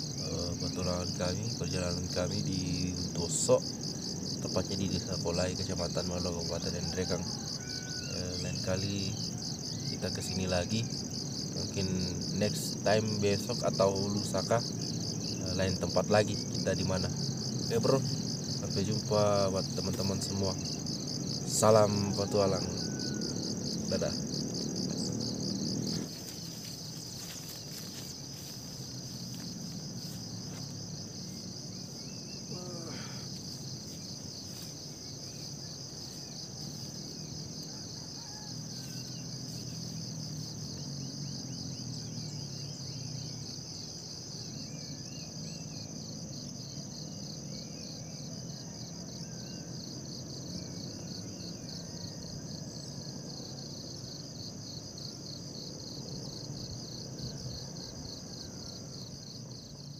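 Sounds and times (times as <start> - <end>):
insects trilling: 0.0 - 59.9.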